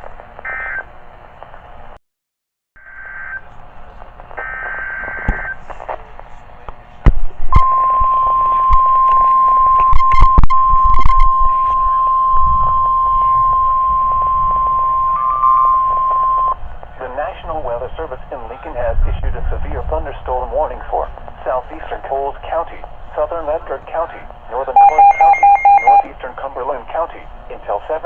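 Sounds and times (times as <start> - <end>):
steady warning alarm tone: 7.6 - 16.7, 24.6 - 26.1
digital data tone bursts: 24.7 - 26.1.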